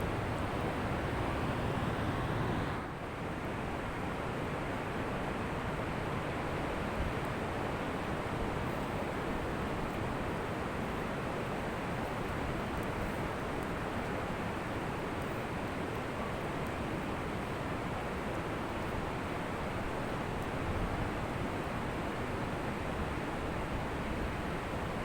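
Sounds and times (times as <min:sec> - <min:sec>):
ocean waves washing on beach: 0:00.0 - 0:03.0.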